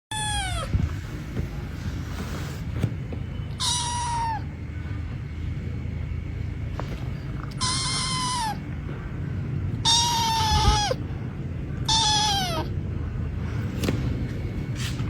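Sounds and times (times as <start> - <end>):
kitten meowing: 0.1 - 0.9, 3.5 - 4.5, 7.5 - 8.6, 9.8 - 11.0, 11.8 - 12.8.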